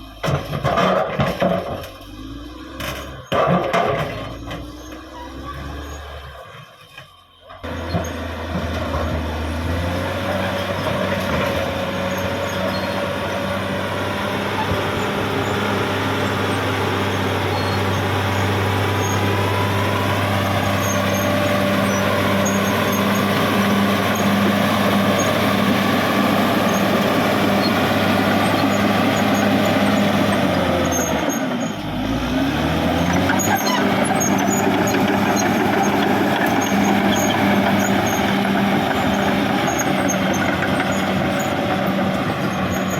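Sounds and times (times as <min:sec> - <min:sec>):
bulldozer diesel engine running: 0:00.0 - 0:42.9.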